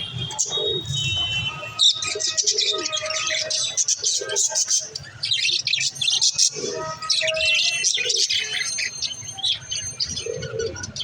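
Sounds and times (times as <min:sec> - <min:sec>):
baby budgerigars chirping: 0:01.8 - 0:11.0.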